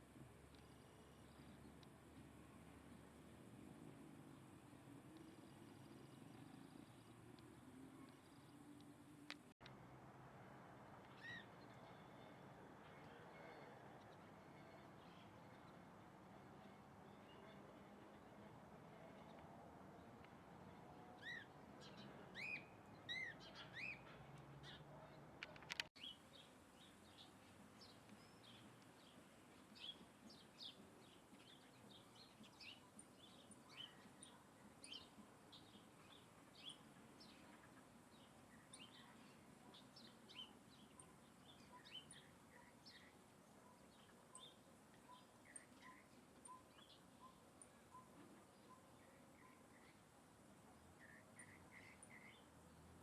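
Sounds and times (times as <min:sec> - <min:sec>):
songbirds chirping: 0:00.0 - 0:09.8, 0:10.6 - 0:53.0
faint repeated bird notes: 0:11.0 - 0:53.0.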